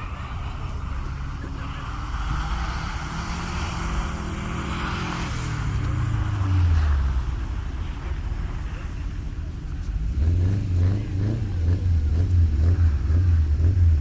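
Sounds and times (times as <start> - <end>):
vehicle engine passing by: 0.0 - 14.0.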